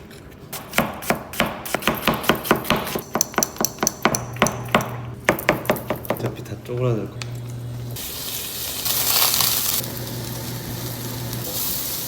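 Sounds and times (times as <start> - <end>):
sharp kitchen knocks: 0.7 - 6.4
low steady hum: 4.0 - 8.4.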